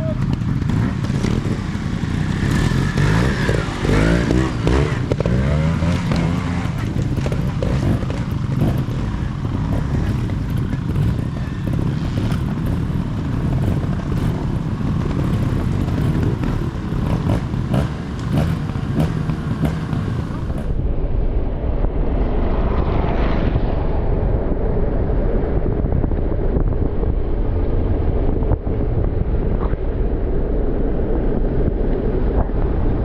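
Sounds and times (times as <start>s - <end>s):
motorcycle engine revving: 0.0s - 20.9s.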